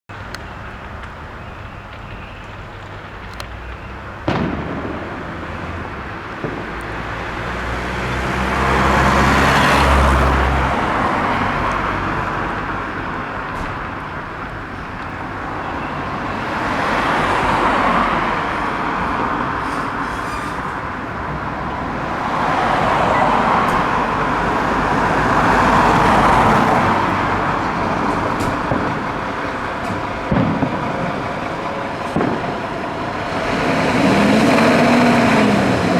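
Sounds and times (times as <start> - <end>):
engine: 0.1 - 35.9
road traffic passing: 0.1 - 35.9
firework bang: 3.5 - 10.8, 25.0 - 35.3.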